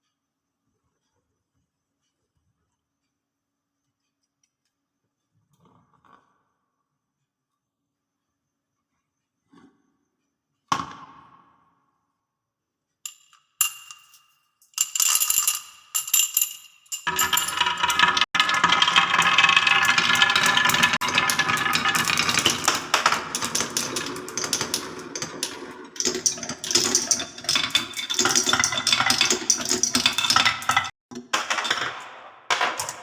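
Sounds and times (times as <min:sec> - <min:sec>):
marbles rolling and rattling: 0:13.1 - 0:33.0.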